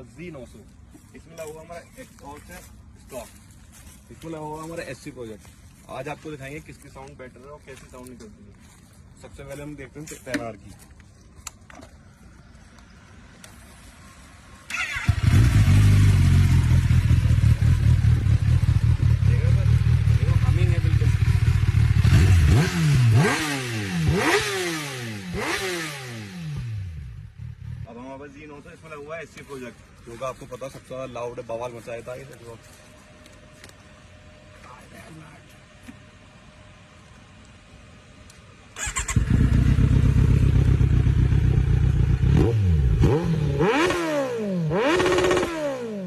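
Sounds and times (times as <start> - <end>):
motorcycle engine revving: 14.6 - 28.0, 38.8 - 46.0.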